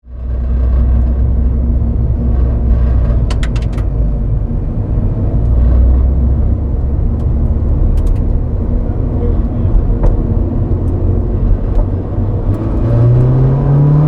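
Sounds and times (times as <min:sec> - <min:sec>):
engine exhaust rumble: 0:00.0 - 0:14.0
sharp clicks: 0:06.8 - 0:08.4.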